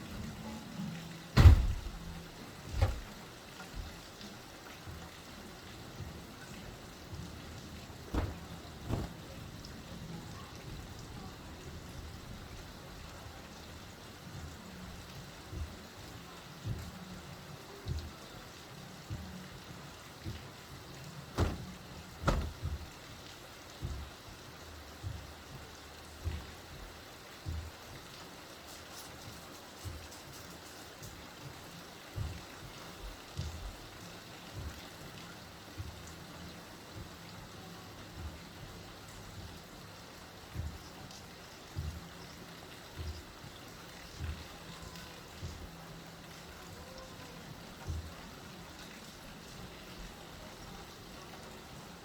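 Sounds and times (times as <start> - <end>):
light rain falling: 0.0 - 52.0
heavy raindrops tapping: 1.4 - 3.2, 7.1 - 10.0, 21.2 - 23.0.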